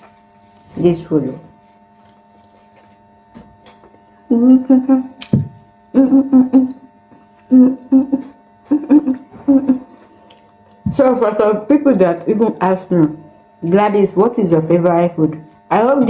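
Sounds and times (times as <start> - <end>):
electrical mains hum: 0.0 - 16.0
woman humming: 4.2 - 10.1.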